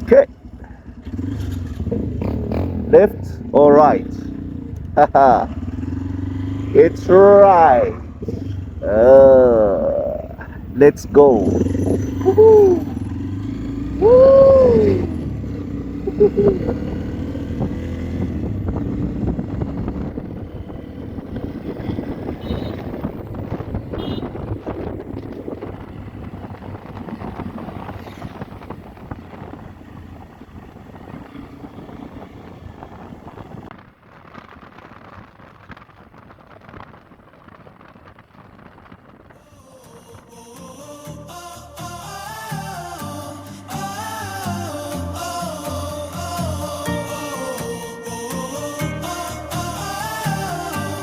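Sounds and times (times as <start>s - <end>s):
motorcycle engines pulling away: 0.0s - 51.0s
person shouting woo: 12.0s - 13.0s, 14.0s - 15.1s.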